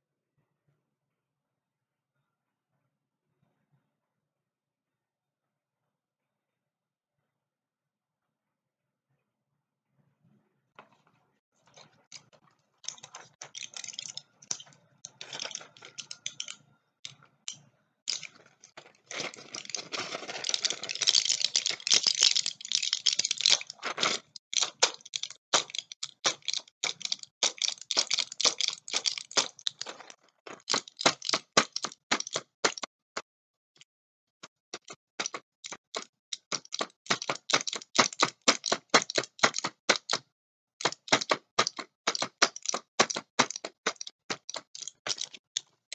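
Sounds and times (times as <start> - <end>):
packaging crinkling: 18.1 - 32.4.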